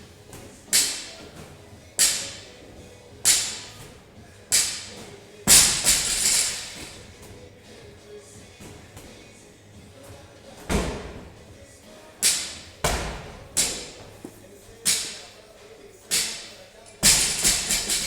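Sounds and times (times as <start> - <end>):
gym equipment thudding: 0.3 - 7.4, 10.1 - 11.5, 12.2 - 15.3, 16.1 - 18.0.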